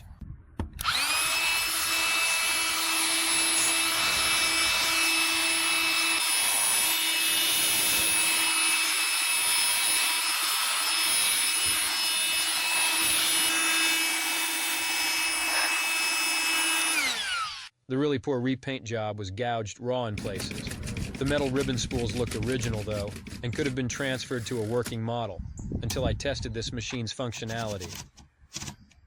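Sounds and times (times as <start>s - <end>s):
electric air gun blowing: 0.8s - 17.7s.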